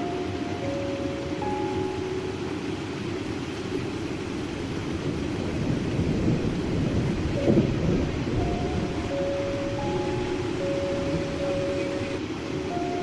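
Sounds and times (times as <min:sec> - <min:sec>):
heavy rain and water rushing: 0:00.0 - 0:13.0.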